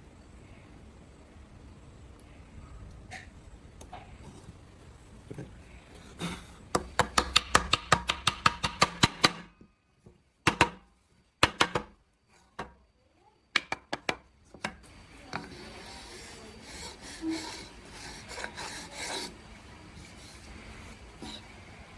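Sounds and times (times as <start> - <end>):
rough rubbing and scraping: 15.2 - 21.5.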